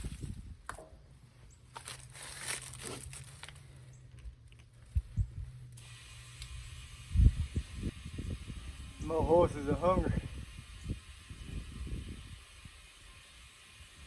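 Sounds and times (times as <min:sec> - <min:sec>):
small clicks and crinkling: 0:01.7 - 0:06.6
steady hiss: 0:05.8 - 0:14.0.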